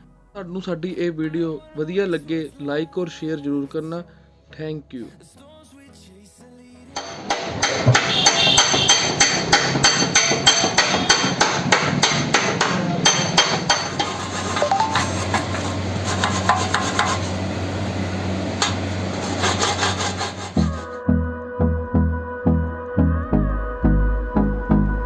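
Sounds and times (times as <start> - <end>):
hammer blows: 7.0 - 17.2.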